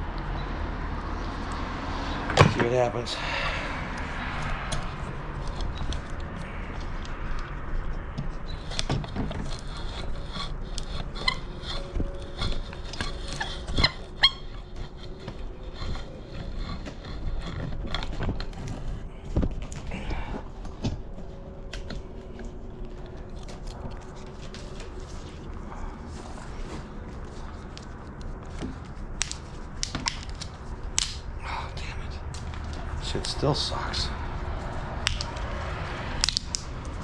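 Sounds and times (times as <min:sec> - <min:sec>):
faint thin squeaks: 0:08.4 - 0:18.2.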